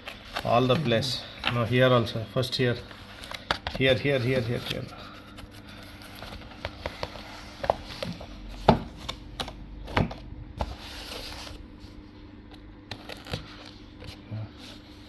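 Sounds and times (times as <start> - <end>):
cardboard box and packaging handled: 2.8 - 12.0.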